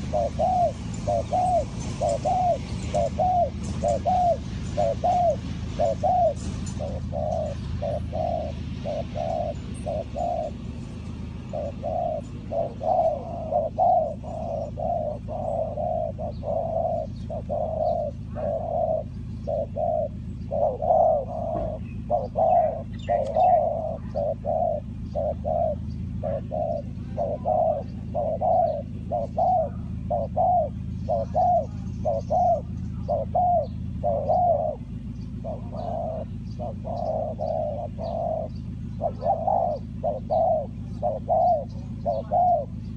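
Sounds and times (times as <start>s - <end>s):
doves cooing: 0.0s - 42.9s
small birds chirping: 0.0s - 42.9s.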